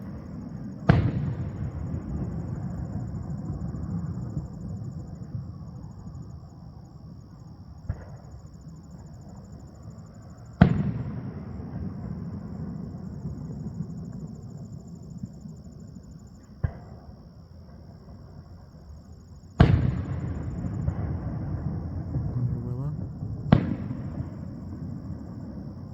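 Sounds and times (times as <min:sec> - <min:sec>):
fireworks booms: 0:00.0 - 0:05.4, 0:10.6 - 0:14.3, 0:19.6 - 0:25.9.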